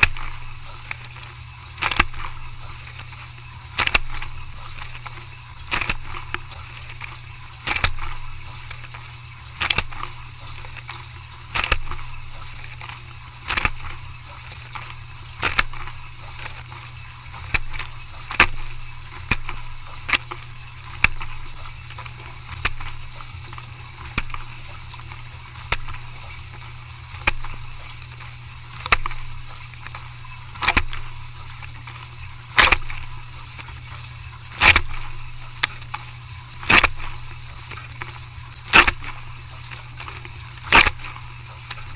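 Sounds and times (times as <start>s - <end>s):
dishwasher humming: 0.0s - 41.9s
water splashing: 0.0s - 41.9s.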